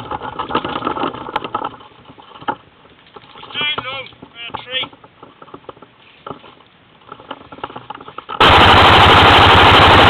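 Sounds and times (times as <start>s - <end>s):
airsoft rifle full-auto burst: 8.4s - 10.0s.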